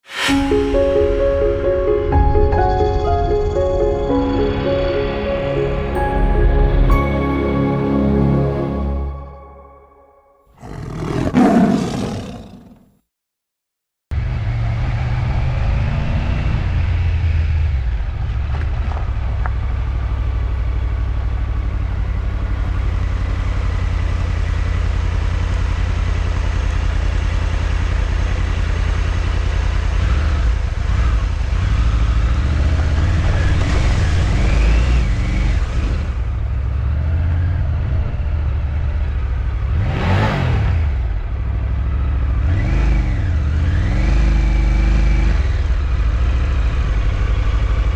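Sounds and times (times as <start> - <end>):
motorcycle engine revving: 27.2 - 47.9.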